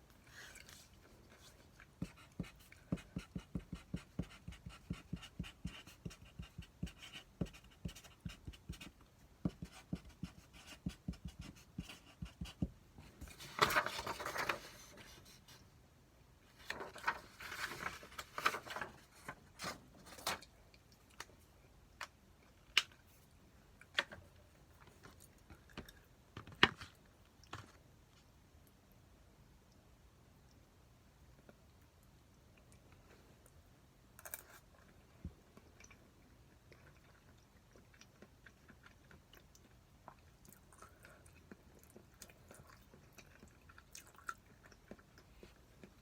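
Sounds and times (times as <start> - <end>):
rustling or scraping: 16.5 - 20.4
chewing food: 34.4 - 46.0.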